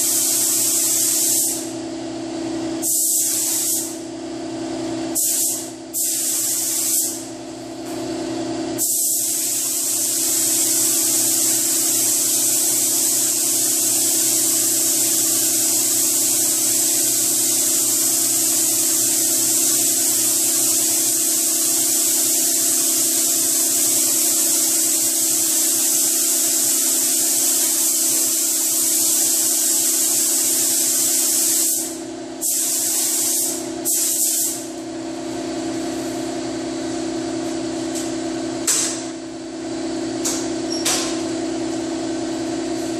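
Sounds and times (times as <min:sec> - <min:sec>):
paint spray gun hissing: 0:00.0 - 0:01.8, 0:02.8 - 0:04.0, 0:05.1 - 0:07.3, 0:08.8 - 0:34.8.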